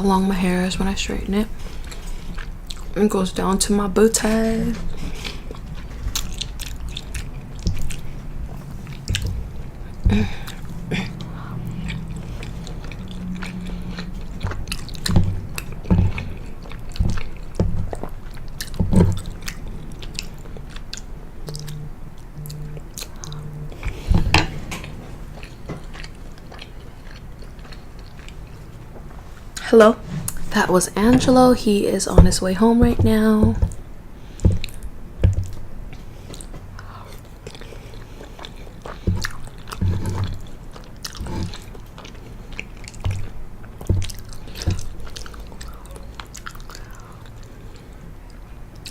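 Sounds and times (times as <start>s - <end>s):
chewing pasta: 1.5s - 3.0s, 4.4s - 29.7s, 33.5s - 48.9s
low buzzes: 21.0s - 25.4s.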